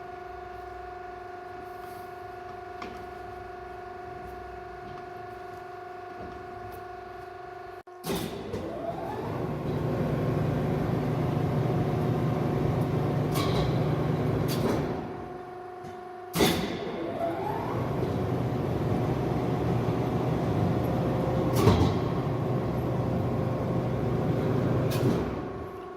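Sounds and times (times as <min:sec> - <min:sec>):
lathe spindle whining and humming: 0:08.6 - 0:16.3, 0:16.9 - 0:25.9.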